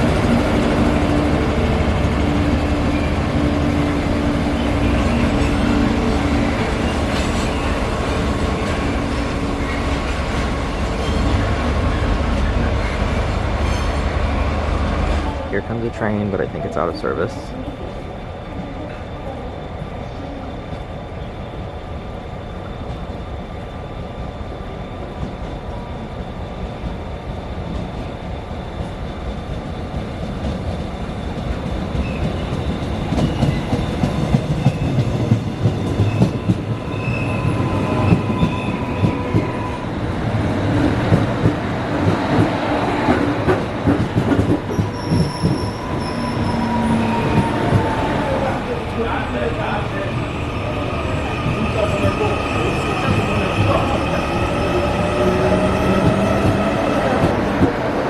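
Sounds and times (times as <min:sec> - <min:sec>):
train running noise: 0:00.0 - 0:58.0
wheel squeal: 0:35.8 - 0:39.8, 0:44.7 - 0:48.0.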